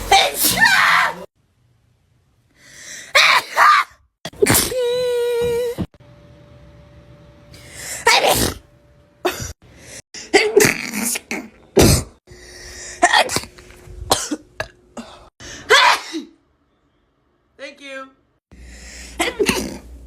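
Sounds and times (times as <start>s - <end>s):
person sneezing: 8.0s - 8.6s, 15.0s - 16.4s, 19.1s - 19.8s.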